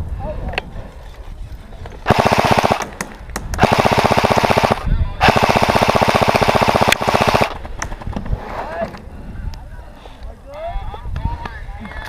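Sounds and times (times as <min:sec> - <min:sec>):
airsoft gun firing bursts: 0:02.0 - 0:07.8.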